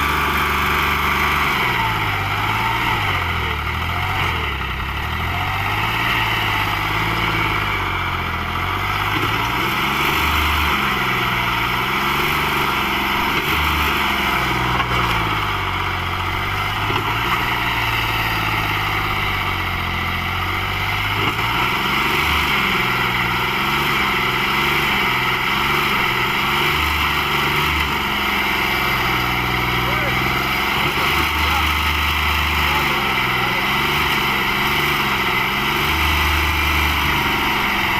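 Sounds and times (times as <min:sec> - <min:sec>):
tractor diesel engine running: 0:00.0 - 0:37.9.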